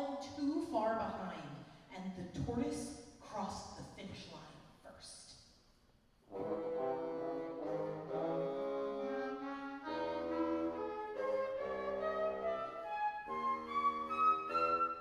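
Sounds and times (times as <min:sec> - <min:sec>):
chamber ensemble playing held chords: 0:06.3 - 0:15.0.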